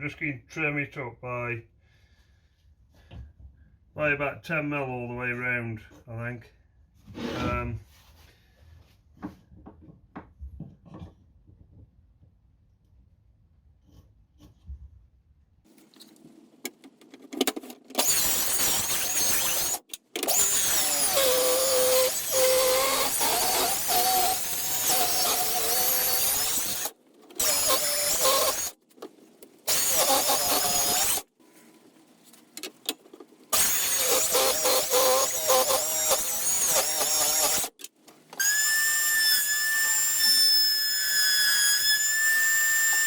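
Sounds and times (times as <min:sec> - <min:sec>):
power tool cutting timber: 0:18.0 - 0:28.8, 0:29.7 - 0:31.3, 0:33.5 - 0:37.8, 0:38.4 - 0:43.0.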